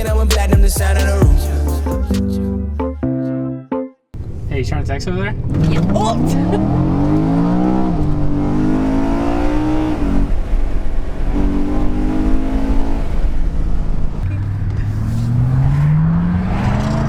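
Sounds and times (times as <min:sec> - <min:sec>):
car engine accelerating hard: 0:04.2 - 0:17.0.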